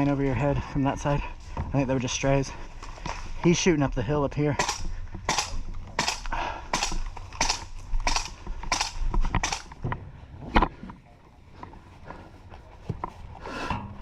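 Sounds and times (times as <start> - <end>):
footsteps crunching on ground: 6.9 - 10.3.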